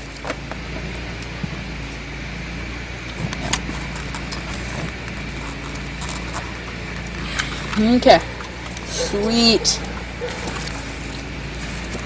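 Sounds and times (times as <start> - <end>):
steady background hum: 0.0 - 12.0.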